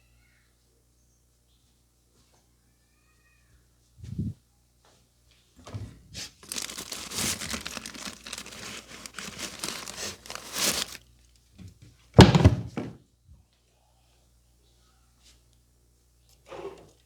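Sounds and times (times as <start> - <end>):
loud thump: 12.2 - 13.0.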